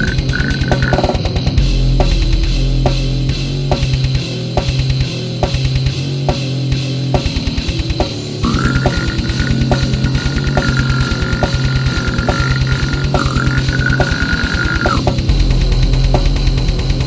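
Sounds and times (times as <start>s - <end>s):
down-tuned guitar chugging: 0.0s - 3.0s, 8.4s - 16.5s.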